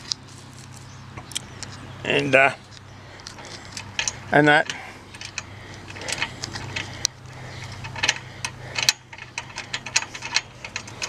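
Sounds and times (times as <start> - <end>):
steady low hum: 0.0 - 11.0
small metallic clicks: 2.7 - 11.0.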